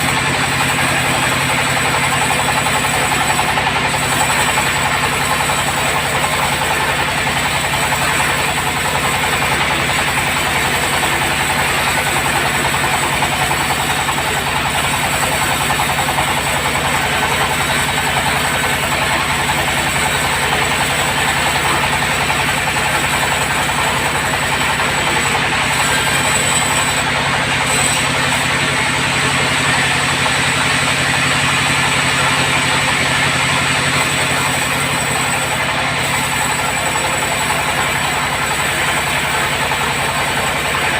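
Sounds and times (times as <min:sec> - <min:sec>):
bandsaw cutting wood: 0:00.0 - 0:40.9.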